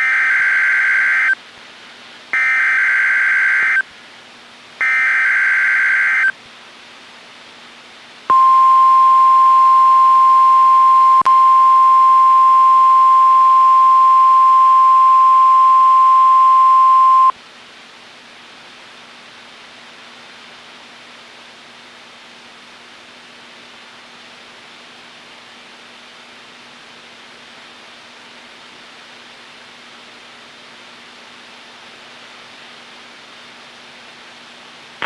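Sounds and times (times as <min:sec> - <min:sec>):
steady warning alarm tone: 0:00.0 - 0:01.4, 0:02.4 - 0:03.8, 0:04.8 - 0:06.3
low hiss of dead air: 0:01.4 - 0:02.5, 0:03.8 - 0:04.9, 0:06.3 - 0:35.0.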